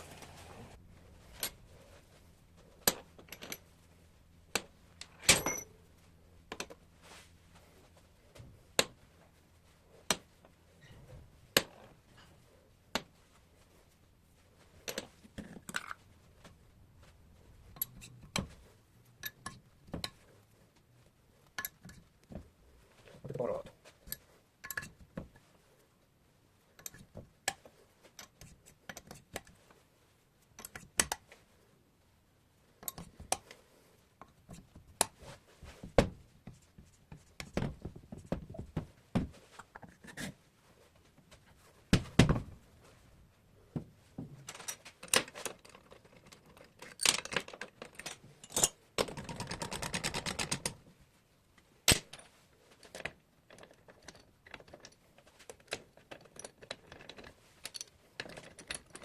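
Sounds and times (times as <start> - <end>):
metal tools clinking: 5.1 - 5.8, 44.5 - 48.8.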